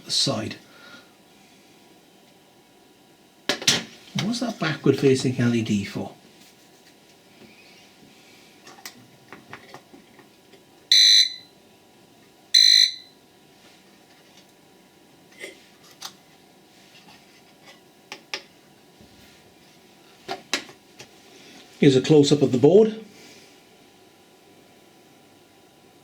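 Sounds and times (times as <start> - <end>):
alarm clock beeps: 10.9 - 11.5, 12.6 - 13.1.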